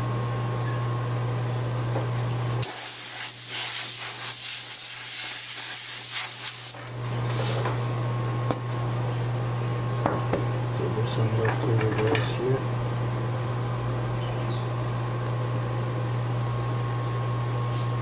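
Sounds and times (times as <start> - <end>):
compressed air hissing: 2.6 - 6.8.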